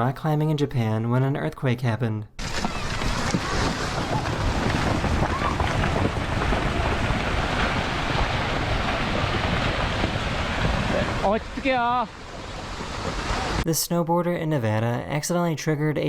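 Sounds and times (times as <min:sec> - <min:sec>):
wind buffeting microphone: 0:02.4 - 0:13.6.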